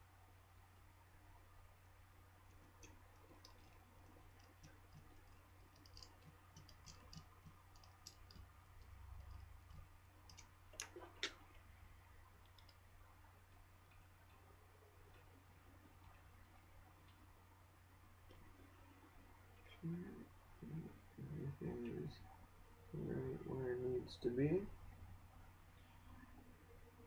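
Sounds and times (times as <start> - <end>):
small tool clicking on phone parts: 2.8 - 10.9
sharp clicks: 12.4 - 12.8.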